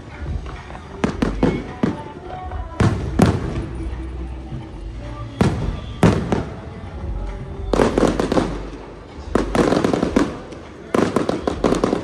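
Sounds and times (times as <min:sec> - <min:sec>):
crackling firework bangs: 0:00.2 - 0:03.9, 0:05.4 - 0:06.6, 0:07.7 - 0:12.0.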